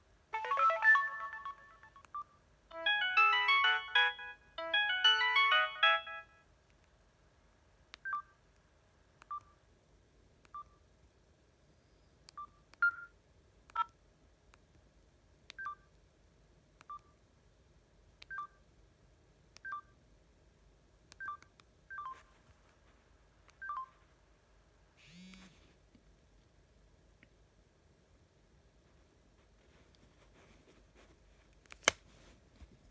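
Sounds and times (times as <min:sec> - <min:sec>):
phone keypad clicks and beeps: 0:10.5 - 0:10.8, 0:15.5 - 0:15.8, 0:19.6 - 0:19.9, 0:21.1 - 0:22.2.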